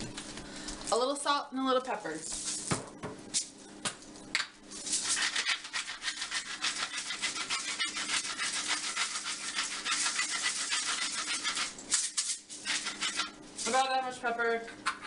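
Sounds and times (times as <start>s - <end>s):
pepper grinder crunching: 4.4s - 14.0s.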